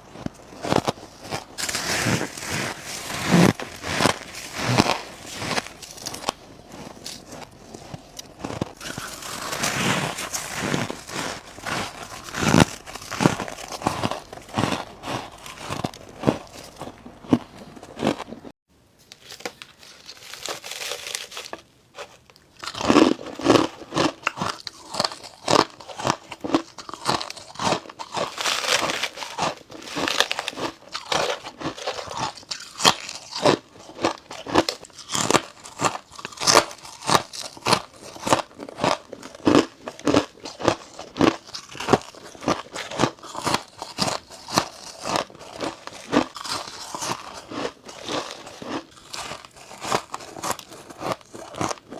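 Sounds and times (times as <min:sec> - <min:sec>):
ice being chewed: 0:00.0 - 0:18.5, 0:20.1 - 0:51.9.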